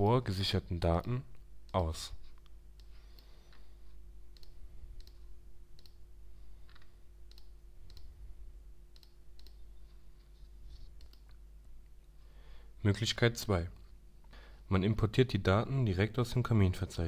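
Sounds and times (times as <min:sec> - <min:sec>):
faint electrical hum: 0:00.0 - 0:17.0
computer mouse clicking: 0:04.3 - 0:06.0, 0:06.6 - 0:08.1, 0:08.9 - 0:09.6, 0:10.7 - 0:11.4.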